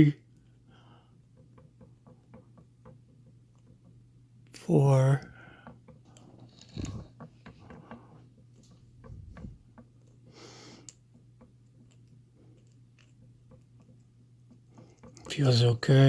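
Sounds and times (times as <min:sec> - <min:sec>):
lock pick clicks and scrapes: 0:06.1 - 0:07.2.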